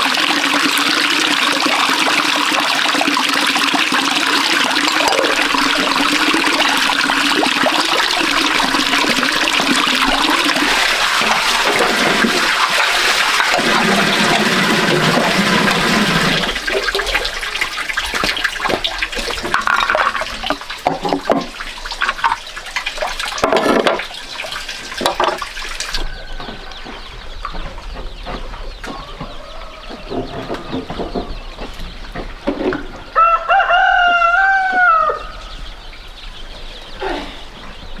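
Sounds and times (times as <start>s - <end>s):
rushing water splashing: 0.0s - 26.7s
rooster crowing: 29.0s - 30.7s, 33.1s - 35.4s.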